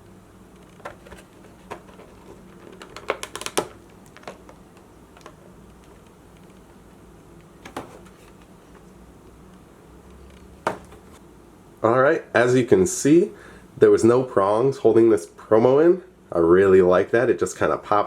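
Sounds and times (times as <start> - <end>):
plastic packaging clicks and taps: 0.8 - 6.6.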